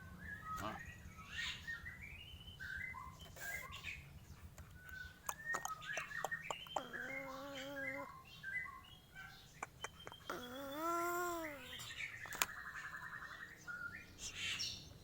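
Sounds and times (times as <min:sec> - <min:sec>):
crow clicks: 0:04.6 - 0:07.8, 0:09.5 - 0:10.4.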